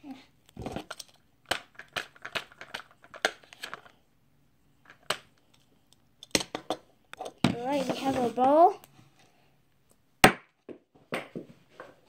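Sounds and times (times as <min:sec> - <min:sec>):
small hard objects clicking: 0:00.5 - 0:03.8.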